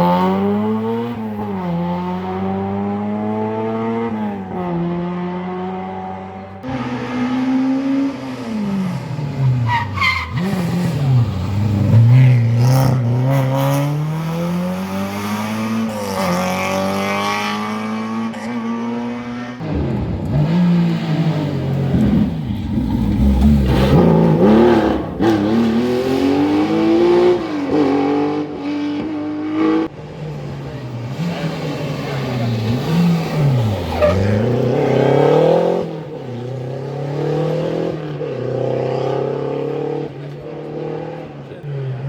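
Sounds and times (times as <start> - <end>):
rally car engines revving: 0.0 - 42.0
tyre squeal: 9.6 - 10.9, 31.5 - 34.7.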